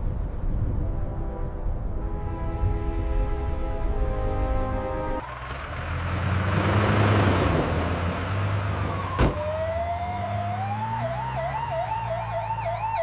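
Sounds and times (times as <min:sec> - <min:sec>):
low engine hum: 0:03.2 - 0:13.0
siren tone rising: 0:08.8 - 0:13.0.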